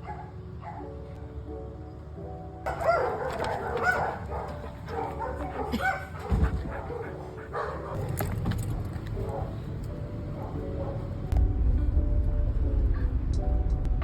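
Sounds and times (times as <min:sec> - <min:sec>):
dog barking and yipping: 0:02.7 - 0:09.6, 0:10.4 - 0:11.1
low rumble with thump: 0:06.3 - 0:06.8.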